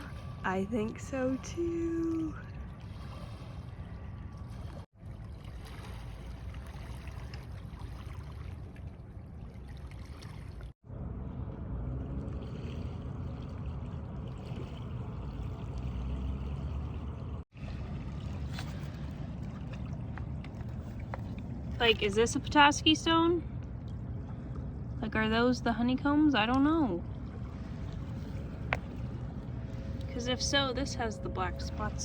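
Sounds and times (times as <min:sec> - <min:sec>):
waves lapping on pebble beach: 0:05.2 - 0:08.5.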